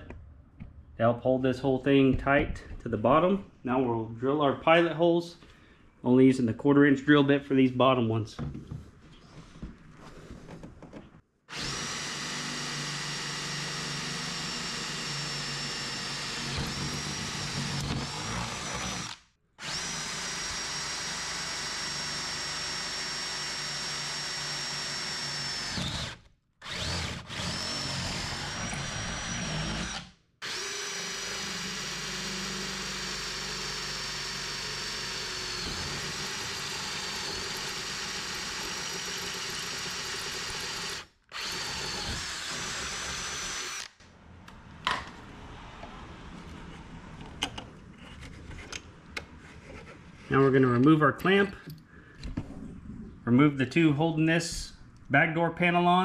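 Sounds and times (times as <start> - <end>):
power drill whining: 11.5 - 44.0.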